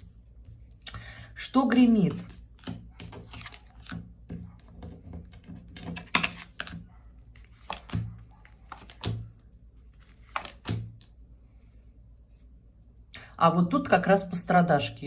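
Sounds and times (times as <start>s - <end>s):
cards tapping on a table: 10.3s - 11.1s.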